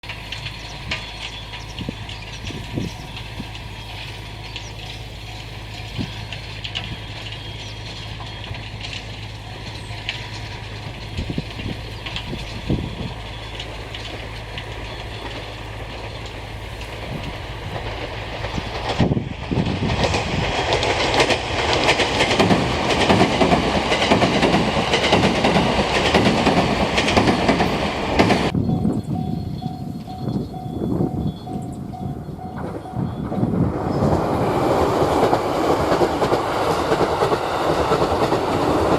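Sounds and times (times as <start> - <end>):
train passing: 0.0 - 38.9
wheels clacking over rail joints: 0.0 - 38.9.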